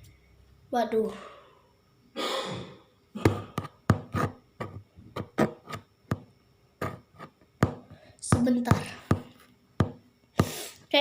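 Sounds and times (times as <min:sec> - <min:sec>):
knocks and taps on hard surface: 0:03.3 - 0:07.0, 0:07.6 - 0:10.0.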